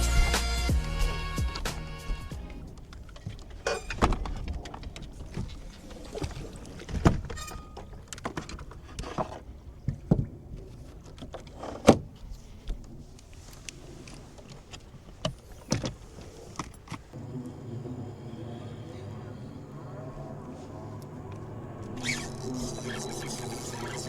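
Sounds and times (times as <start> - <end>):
knocks and clunks of handling: 2.4 - 13.0.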